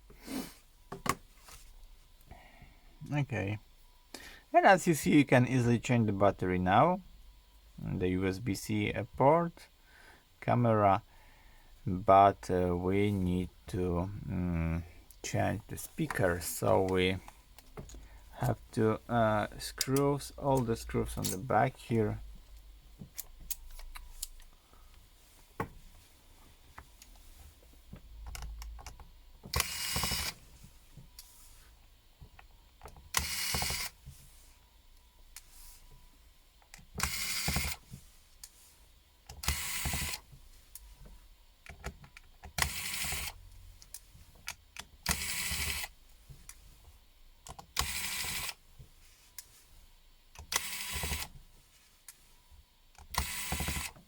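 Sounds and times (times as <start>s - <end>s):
screwdriver whirring bursts: 29.5s - 30.4s, 33.1s - 34.0s, 37.0s - 37.8s, 39.4s - 40.2s, 42.6s - 43.4s, 45.0s - 45.9s, 47.7s - 48.6s, 50.4s - 51.3s, 53.0s - 54.0s.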